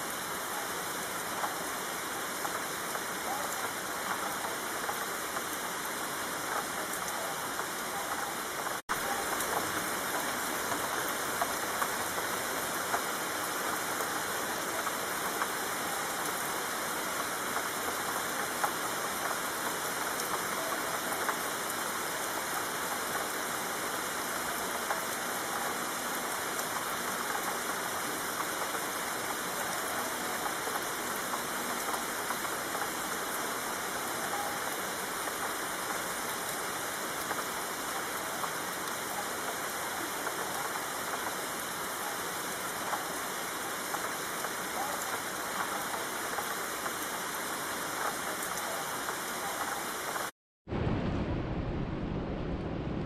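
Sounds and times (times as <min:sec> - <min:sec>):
steady rainfall: 0:00.0 - 0:53.0
raindrop ticks: 0:00.4 - 0:50.3.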